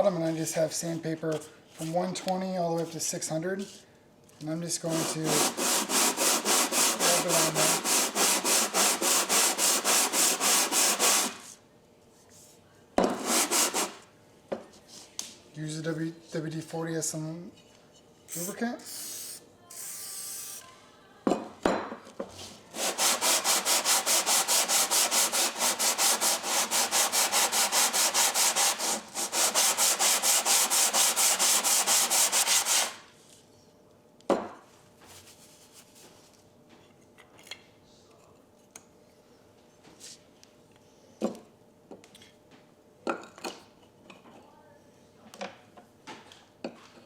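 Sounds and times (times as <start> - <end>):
plane rasping on sandpaper: 4.9 - 11.5, 13.2 - 14.0, 22.8 - 33.0.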